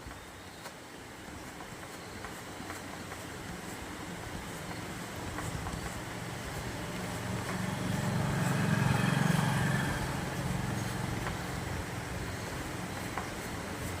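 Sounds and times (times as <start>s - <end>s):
vehicle engine passing by: 6.3s - 12.2s.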